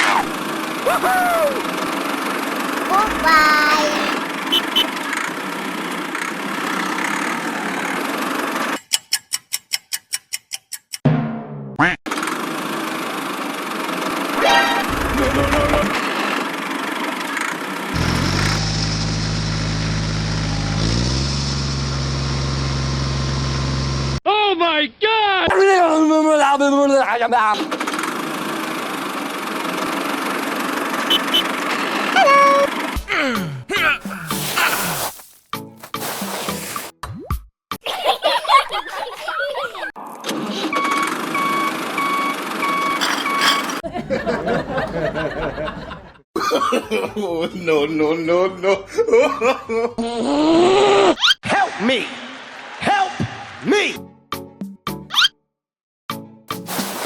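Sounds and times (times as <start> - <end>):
wavering voice-like sound: 2.9 - 4.2
engine running: 12.4 - 24.2.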